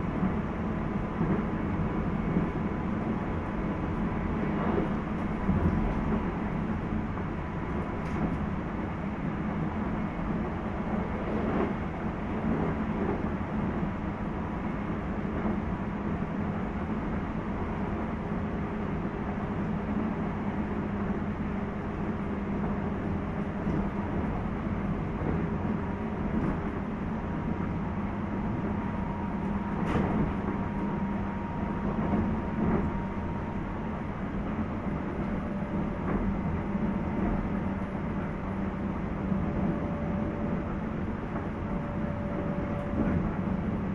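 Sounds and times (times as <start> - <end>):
train running rumble: 0.0 - 43.9.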